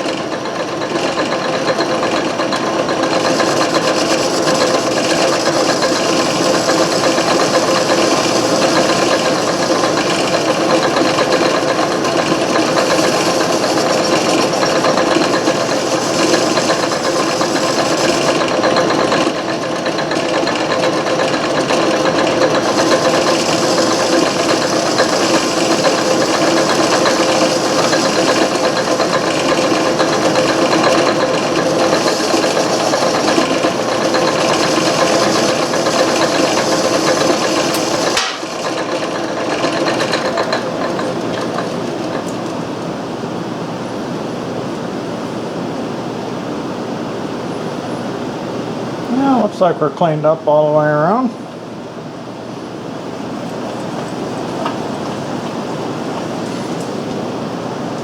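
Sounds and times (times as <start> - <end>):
lathe machine hum: 0.0 - 58.0
rattly cutting hiss: 0.1 - 42.5.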